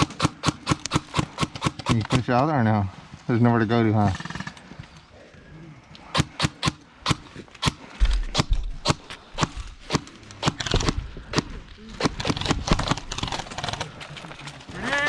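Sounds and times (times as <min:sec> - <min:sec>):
airsoft gun shots: 0:00.0 - 0:02.2.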